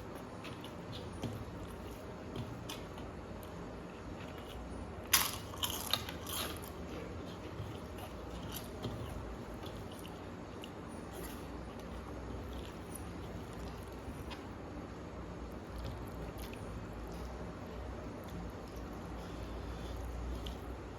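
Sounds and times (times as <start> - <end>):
crisp food crunching: 4.2 - 14.4.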